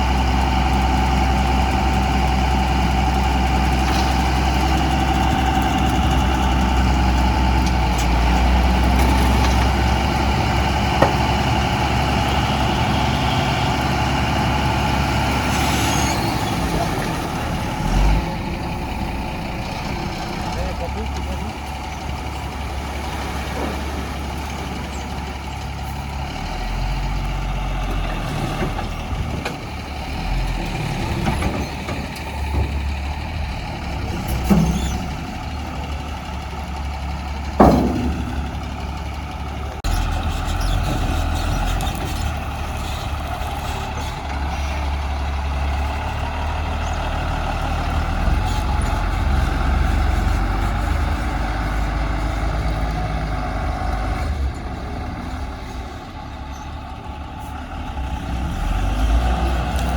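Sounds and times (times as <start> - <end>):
heavy diesel engines running: 0.0 - 59.9
sharp bang: 37.6 - 39.1.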